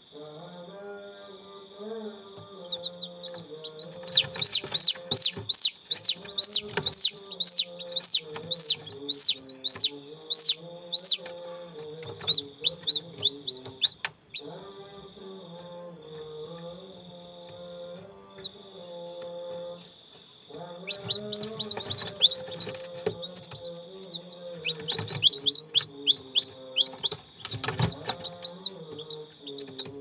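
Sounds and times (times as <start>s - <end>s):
background music: 0.8s - 30.0s
chick peeping loudly: 2.6s - 11.3s, 12.0s - 14.5s, 20.9s - 30.0s.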